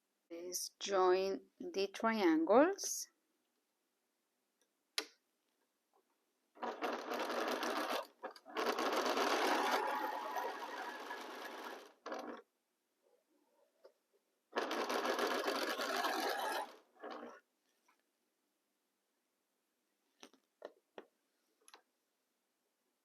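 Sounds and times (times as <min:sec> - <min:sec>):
sewing machine stitching: 0:06.6 - 0:12.4, 0:14.6 - 0:17.4.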